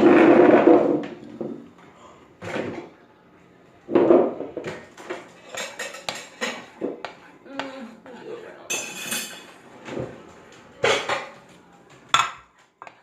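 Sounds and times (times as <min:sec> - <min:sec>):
dishes and utensils clattering: 0:03.9 - 0:07.2, 0:08.1 - 0:13.0
dishes knocking: 0:03.9 - 0:07.2, 0:12.1 - 0:13.0.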